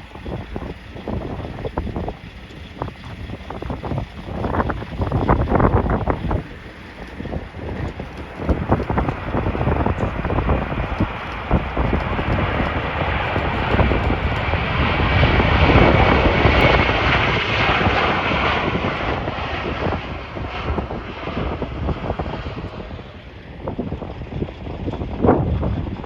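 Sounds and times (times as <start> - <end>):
faint high engine whine: 0.0 - 26.0
jet airliner passing: 0.0 - 26.0
wind buffeting microphone: 0.0 - 26.0.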